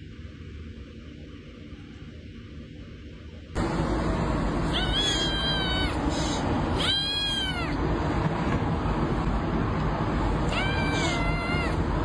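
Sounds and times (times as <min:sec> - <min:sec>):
steady background noise: 0:00.0 - 0:12.0
cat meowing: 0:04.7 - 0:07.8, 0:10.5 - 0:11.9.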